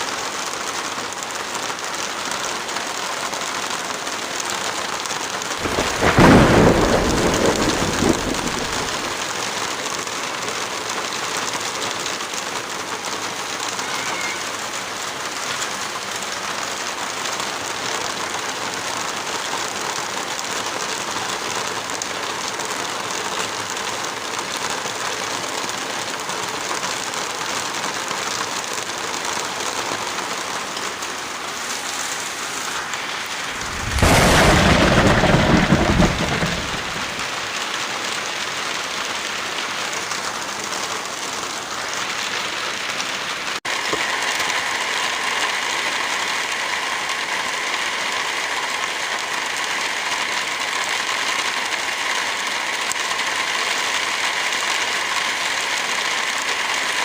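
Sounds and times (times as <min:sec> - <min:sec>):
steady rain falling: 0:00.0 - 0:57.0
thunder clap rumbling: 0:05.6 - 0:09.2, 0:32.8 - 0:37.7.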